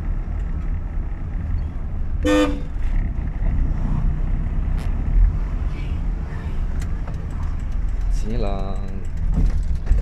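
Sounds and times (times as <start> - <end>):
car driving rumble: 0.0 - 10.0
short vehicle horn toot: 2.2 - 2.8.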